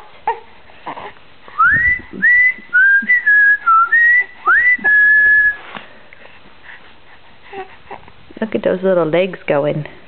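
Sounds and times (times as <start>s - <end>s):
person whistling a tune: 1.6s - 5.6s.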